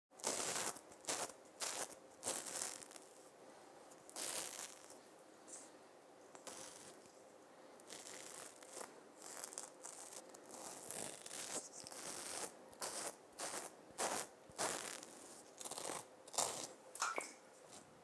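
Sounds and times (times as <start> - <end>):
razor scraping stubble: 0.2 - 3.2, 4.1 - 5.0, 6.3 - 7.1, 7.8 - 16.8.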